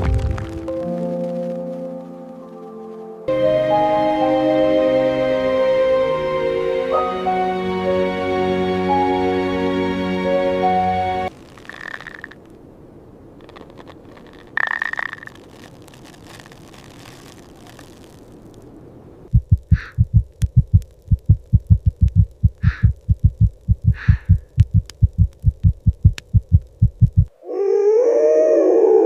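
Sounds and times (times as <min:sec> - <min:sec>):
faint hiss: 0:11.3 - 0:27.4
fast heartbeat thumping: 0:19.3 - 0:27.3.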